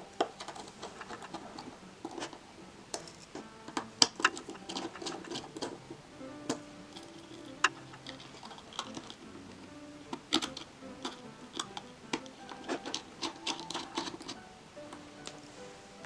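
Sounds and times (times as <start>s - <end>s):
quiet solo piano music: 0.0s - 16.0s
small tools clicking on phone parts: 0.2s - 5.8s, 6.5s - 9.2s, 10.1s - 14.4s.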